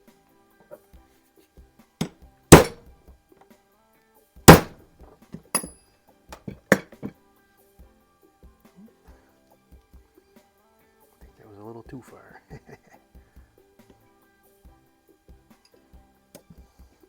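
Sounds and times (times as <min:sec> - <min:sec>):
small hammer tapping metal pin: 0:02.5 - 0:02.8, 0:04.5 - 0:04.8, 0:05.4 - 0:05.7, 0:06.4 - 0:07.1.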